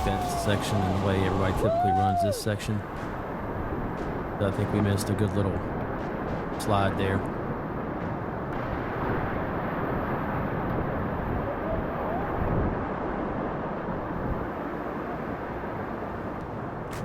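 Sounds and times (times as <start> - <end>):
whitewater rushing: 0.0 - 4.8.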